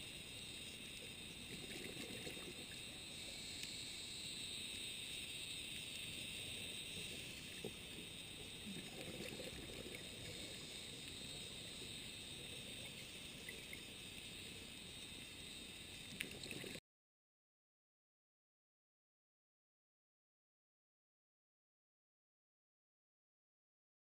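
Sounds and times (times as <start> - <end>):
underwater hiss with crackle: 0.0 - 16.8.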